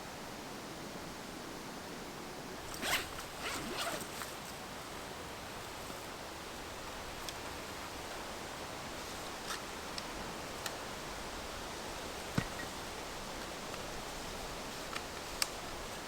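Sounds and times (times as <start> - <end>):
outdoor hiss: 0.0 - 16.0
zipper rasping: 2.7 - 4.2.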